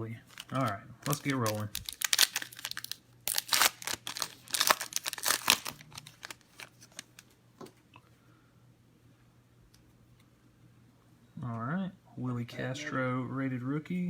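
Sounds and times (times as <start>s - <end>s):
plastic wrapping tearing and crinkling: 0.2s - 7.4s.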